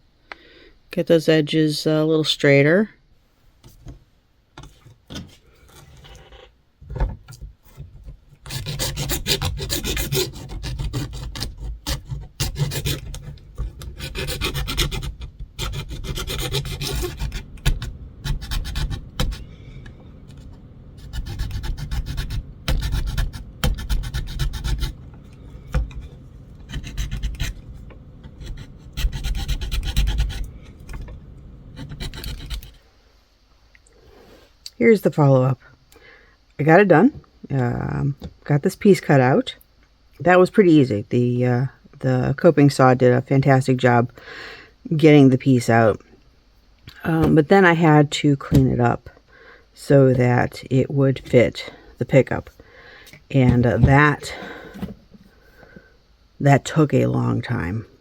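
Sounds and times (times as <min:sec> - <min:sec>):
hand file rasping on plastic edge: 0:08.4 - 0:19.5, 0:21.0 - 0:25.0, 0:26.6 - 0:30.5, 0:31.8 - 0:32.8.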